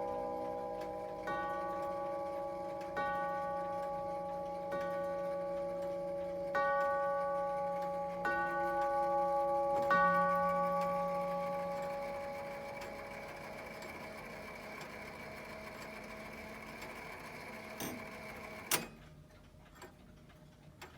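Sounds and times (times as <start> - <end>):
clock tubular chime: 0.0 - 16.4.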